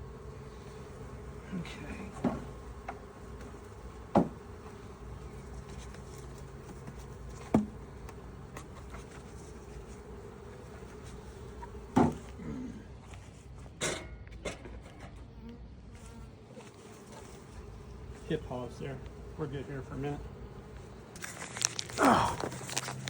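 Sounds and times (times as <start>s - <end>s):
honeybees buzzing: 0.0s - 13.1s, 15.9s - 23.0s
sharp knocks of hive equipment: 2.1s - 4.4s, 6.6s - 9.0s, 12.0s - 12.3s.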